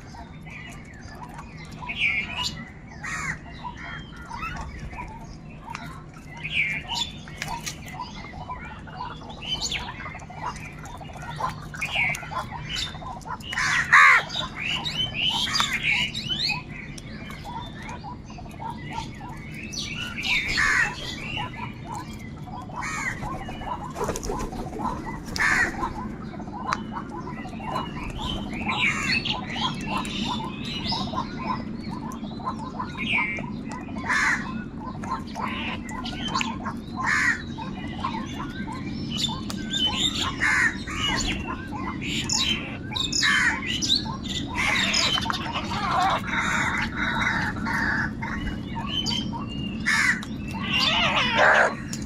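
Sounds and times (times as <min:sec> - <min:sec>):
crows cawing: 0:03.0 - 0:04.0, 0:13.6 - 0:14.4, 0:20.3 - 0:21.4, 0:22.8 - 0:24.1, 0:25.4 - 0:26.0, 0:34.1 - 0:34.5, 0:37.0 - 0:37.5, 0:40.1 - 0:41.3, 0:43.2 - 0:43.8, 0:44.6 - 0:48.5, 0:49.8 - 0:52.0.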